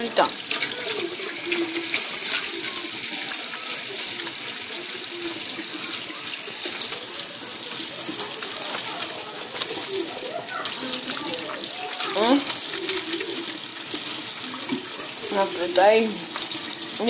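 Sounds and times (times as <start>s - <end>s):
tap water running into sink: 0.0s - 17.0s.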